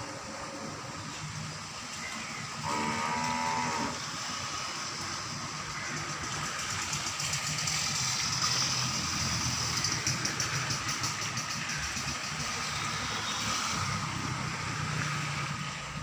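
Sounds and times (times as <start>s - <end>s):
cow mooing: 2.6s - 4.0s.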